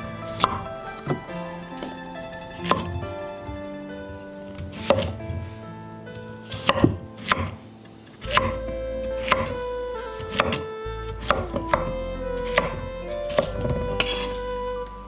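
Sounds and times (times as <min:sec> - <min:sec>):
soft instrumental music: 0:00.0 - 0:15.0
knife chopping on cutting board: 0:02.6 - 0:03.0, 0:04.6 - 0:05.4, 0:06.5 - 0:07.6, 0:08.3 - 0:08.6, 0:09.2 - 0:09.6, 0:10.3 - 0:11.9, 0:12.5 - 0:14.3.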